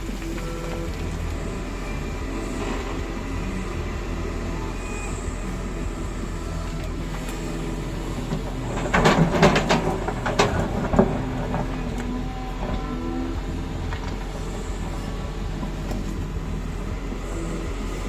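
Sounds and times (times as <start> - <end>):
diesel engine running: 0.0 - 18.0
clanks and scraping: 6.6 - 17.0.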